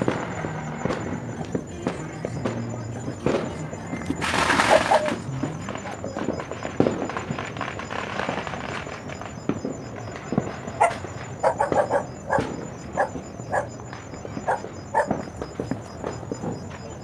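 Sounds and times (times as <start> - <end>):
dog barking: 4.2 - 6.4, 10.7 - 13.8, 14.4 - 15.7.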